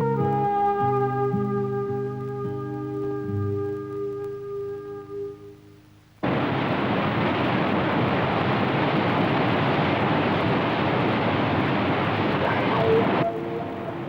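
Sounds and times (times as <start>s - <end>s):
whitewater rushing: 6.2s - 14.0s.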